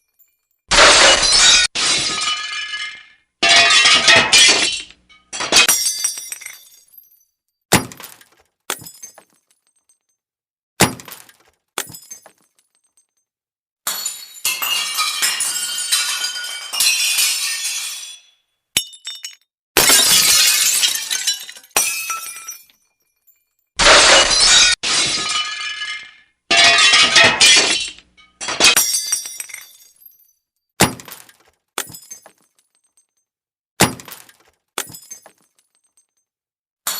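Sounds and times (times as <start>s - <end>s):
glass shattering: 0.0s - 10.2s, 10.8s - 13.2s, 13.9s - 33.2s, 33.8s - 36.2s
glass cracking: 13.9s - 18.2s.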